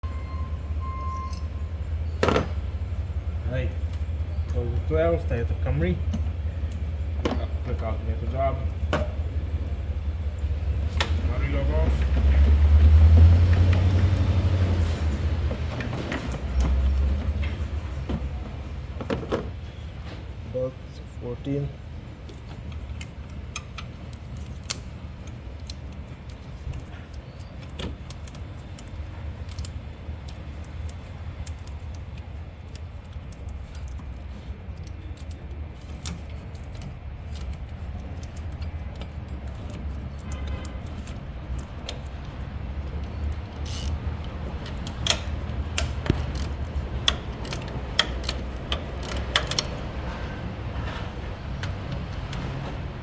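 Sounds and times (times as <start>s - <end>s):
metal tools clinking on metal: 1.0s - 1.7s.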